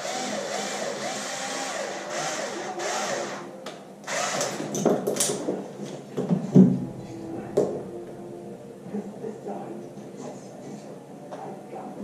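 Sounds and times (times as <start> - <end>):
cordless power driver whining: 0.0 - 4.8.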